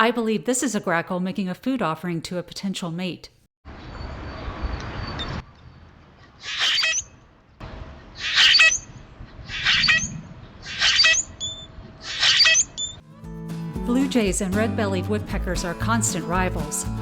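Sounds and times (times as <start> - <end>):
grackle rasping creak and squeak: 4.8 - 7.3, 8.1 - 13.0.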